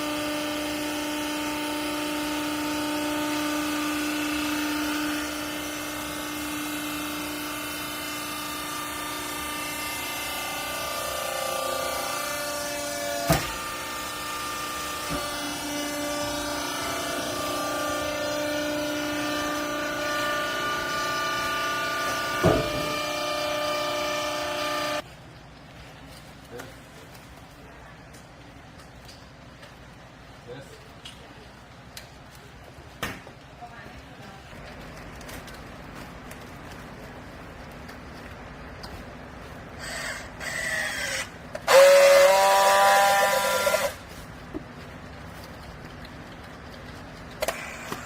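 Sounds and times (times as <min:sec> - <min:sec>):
hydraulic press whine: 0:00.0 - 0:25.0, 0:39.7 - 0:44.3, 0:47.3 - 0:48.0.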